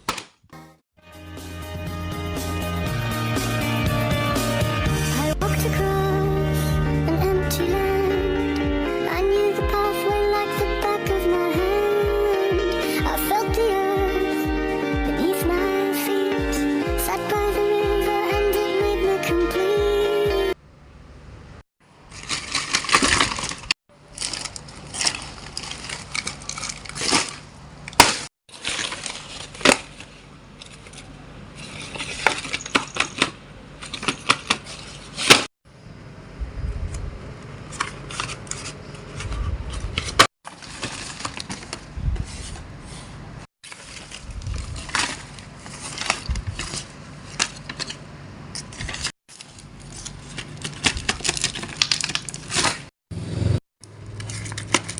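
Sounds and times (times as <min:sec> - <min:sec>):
objects handled near microphone: 0:22.1 - 0:35.5, 0:37.6 - 0:52.9, 0:54.1 - 0:54.9.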